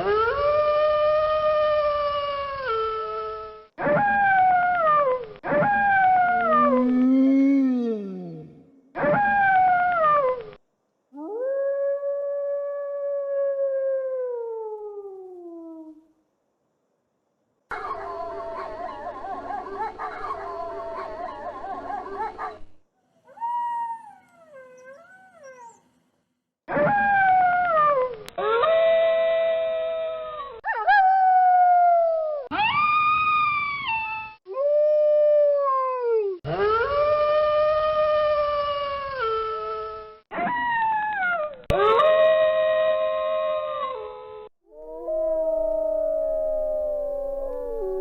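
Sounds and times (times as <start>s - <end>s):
wolves howling: 0.0s - 7.6s, 17.7s - 22.6s, 23.3s - 25.8s, 44.8s - 48.0s.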